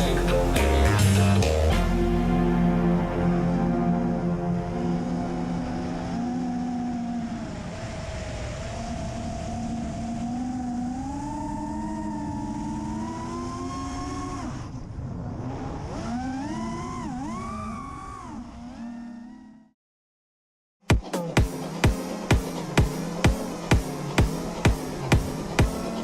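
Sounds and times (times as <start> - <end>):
quadcopter motors whining: 3.7 - 19.7, 21.2 - 26.0.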